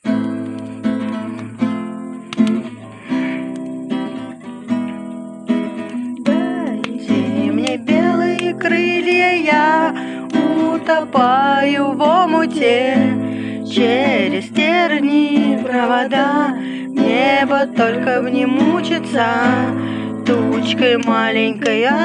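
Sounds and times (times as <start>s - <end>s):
acoustic guitar strumming: 0.0s - 22.0s
person singing: 5.6s - 22.0s.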